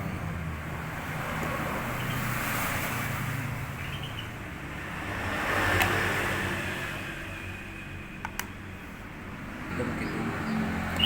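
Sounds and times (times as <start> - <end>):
click: 8.2 - 8.5.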